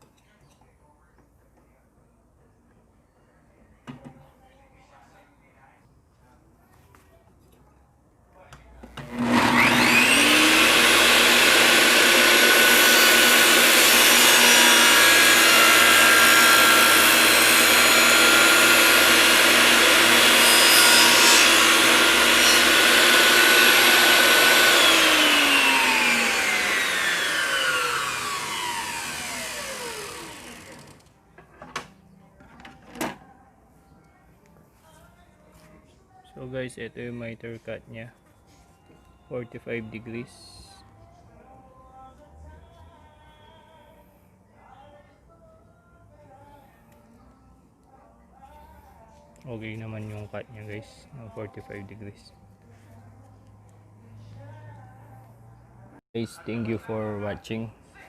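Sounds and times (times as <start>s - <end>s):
table saw running and winding down: 9.0s - 31.1s.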